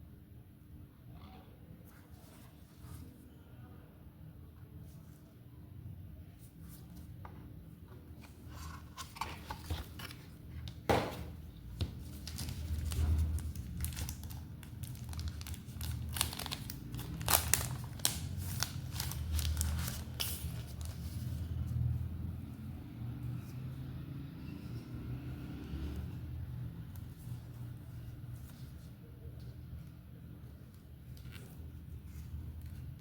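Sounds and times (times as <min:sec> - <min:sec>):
packaging crinkling and tearing: 0:12.1 - 0:21.1.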